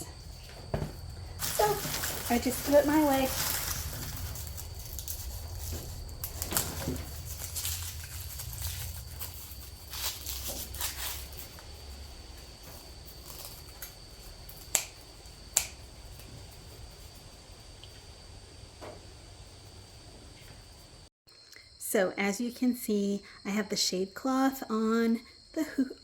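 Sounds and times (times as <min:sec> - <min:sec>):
garlic skins rustling and scraping: 0:00.0 - 0:15.5.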